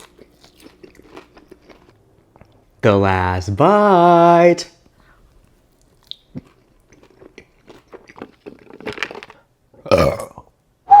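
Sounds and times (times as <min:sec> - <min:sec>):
close chewing and biting food: 0:00.0 - 0:02.6, 0:05.4 - 0:10.2.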